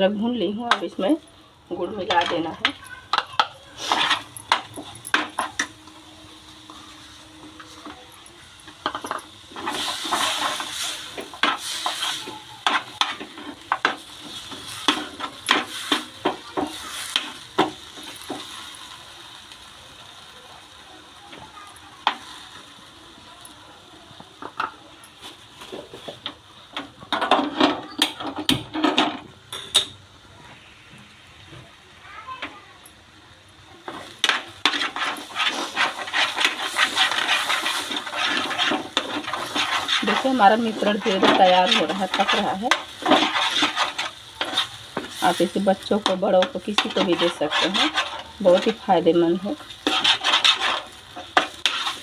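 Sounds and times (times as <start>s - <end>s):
faint sizzle: 0.0s - 52.0s
spoon scraping and clinking in pan: 2.0s - 5.7s, 7.6s - 18.6s, 33.9s - 48.9s, 49.5s - 52.0s.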